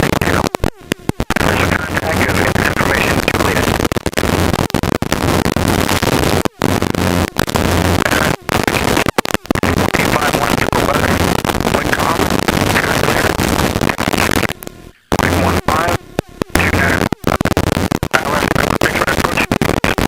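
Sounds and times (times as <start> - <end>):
faint radio voice: 0.0 - 0.6, 1.3 - 3.9, 8.0 - 17.4, 18.0 - 20.0
helicopter cockpit hiss and hum: 0.0 - 20.0.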